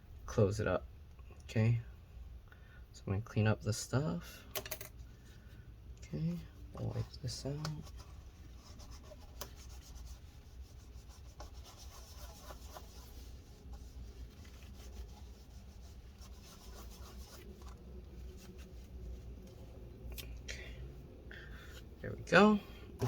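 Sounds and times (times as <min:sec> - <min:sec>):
rubbing and scraping on plastic: 0:06.3 - 0:20.0.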